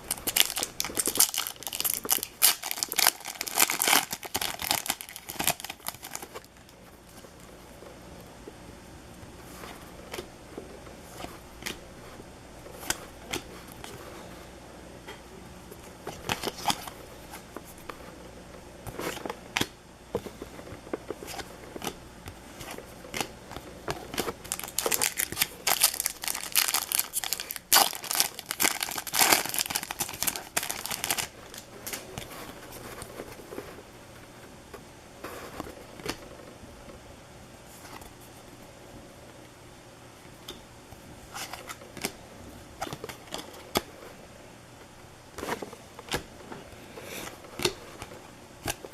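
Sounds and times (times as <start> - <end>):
foil wrappers tearing and crinkling: 0.0 - 6.5, 24.4 - 32.0.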